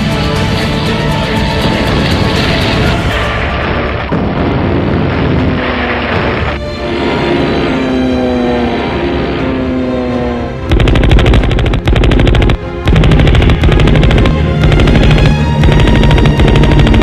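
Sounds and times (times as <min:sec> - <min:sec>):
film soundtrack music: 0:00.0 - 0:17.0
rapid automatic gunfire: 0:10.7 - 0:17.0.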